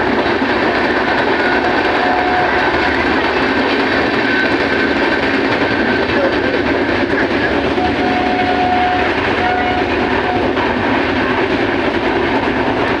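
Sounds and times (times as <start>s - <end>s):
train wheels rushing on rail: 0.0s - 13.0s
faint train horn: 1.3s - 3.2s, 7.4s - 10.9s.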